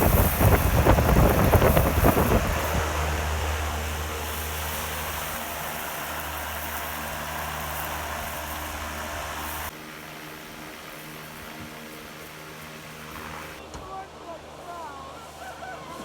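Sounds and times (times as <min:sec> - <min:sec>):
motor humming: 0:00.0 - 0:09.7.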